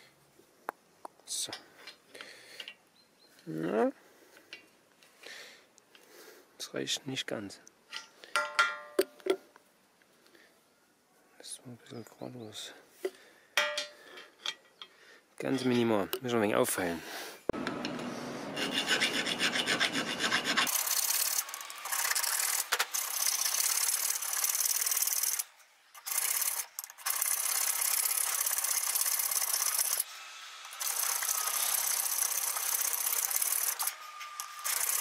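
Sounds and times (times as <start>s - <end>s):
hand file rasping on steel: 18.4s - 22.6s.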